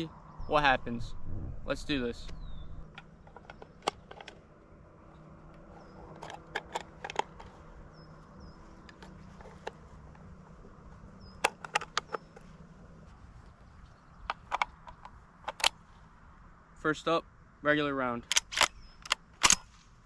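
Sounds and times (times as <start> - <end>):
shotgun handling clicks: 2.2 - 7.7, 8.8 - 10.3, 11.2 - 12.5, 14.2 - 15.8, 18.2 - 19.9.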